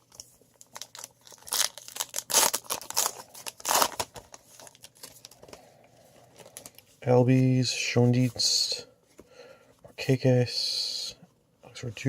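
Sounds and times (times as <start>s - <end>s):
trading cards rustling: 0.1s - 6.9s.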